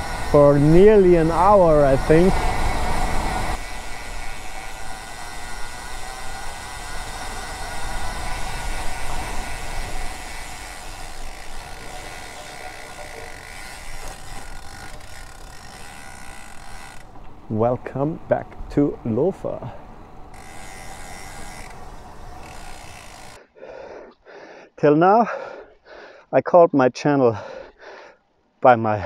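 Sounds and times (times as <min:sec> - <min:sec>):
bicycle freehub buzzing: 0:00.0 - 0:17.4, 0:19.6 - 0:23.5
wind: 0:00.0 - 0:29.0.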